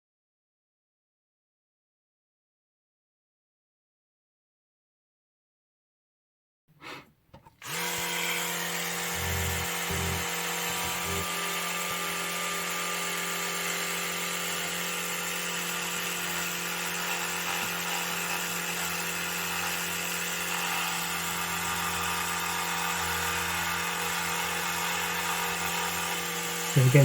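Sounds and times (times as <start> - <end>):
electric toothbrush humming: 7.6 - 27.0.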